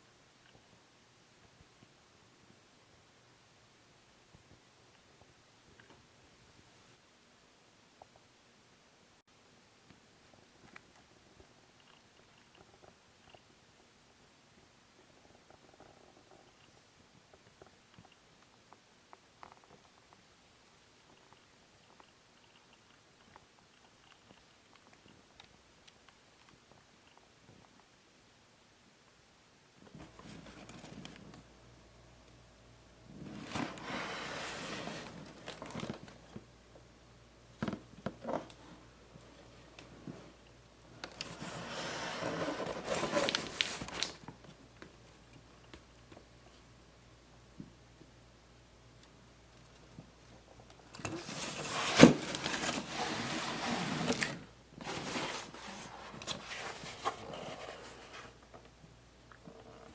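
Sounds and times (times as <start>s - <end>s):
packaging rustling and crinkling: 41.1s - 44.3s, 51.0s - 58.4s.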